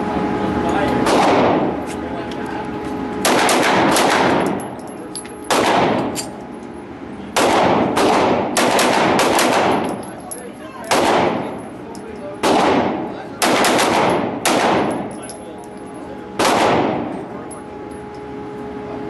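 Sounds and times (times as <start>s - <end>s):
gunshots with echoing decay: 1.0s - 1.6s, 3.2s - 4.6s, 5.5s - 6.2s, 7.4s - 10.0s, 10.9s - 11.6s, 12.4s - 15.2s, 16.4s - 17.2s.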